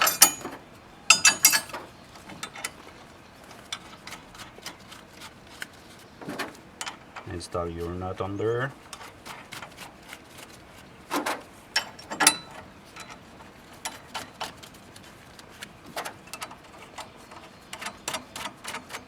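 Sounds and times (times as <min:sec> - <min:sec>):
metallic clicks of bolts and nuts: 0:00.0 - 0:03.0, 0:11.8 - 0:14.6, 0:15.9 - 0:19.0.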